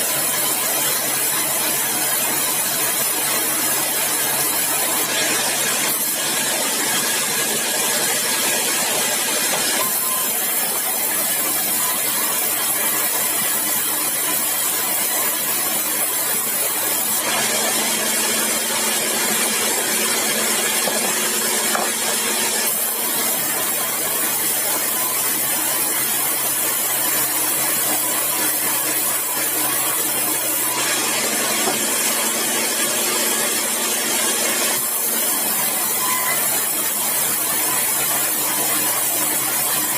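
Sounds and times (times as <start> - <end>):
saw cutting timber hiss: 20.2 - 32.8, 34.8 - 39.9.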